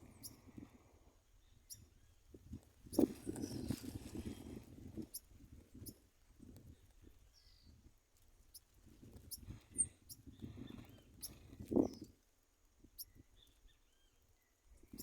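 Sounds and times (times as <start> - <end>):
birds fluttering and rustling: 2.5 - 5.6.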